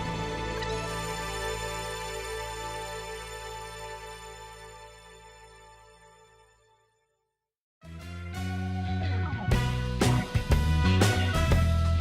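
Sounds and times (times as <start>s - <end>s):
guitar music with steady beat: 8.6s - 12.0s.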